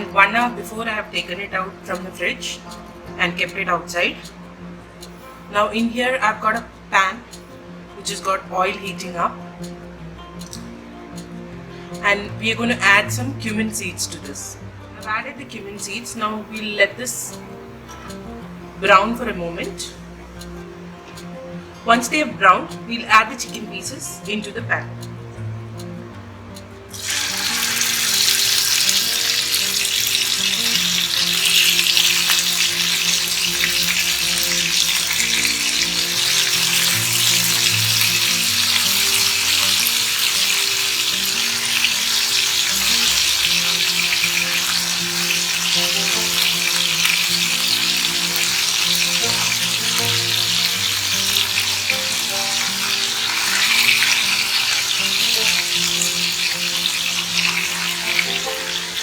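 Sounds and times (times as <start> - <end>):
chicken frying in hot oil: 26.9 - 59.0.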